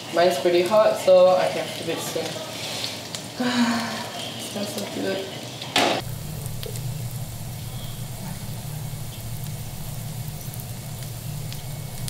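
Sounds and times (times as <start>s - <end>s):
pancake sizzling in oil: 0.0s - 12.0s
steady low hum: 6.0s - 12.0s.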